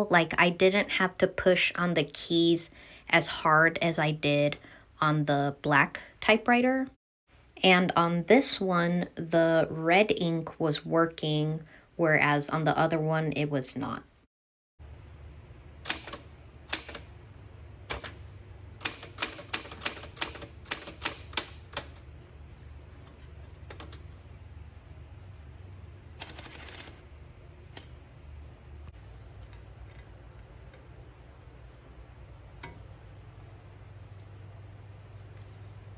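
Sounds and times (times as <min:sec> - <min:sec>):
low steady hum: 0:14.8 - 0:19.5, 0:20.4 - 0:35.9
typewriter keystrokes: 0:15.8 - 0:17.1, 0:17.9 - 0:18.2, 0:18.8 - 0:22.0, 0:26.2 - 0:27.0.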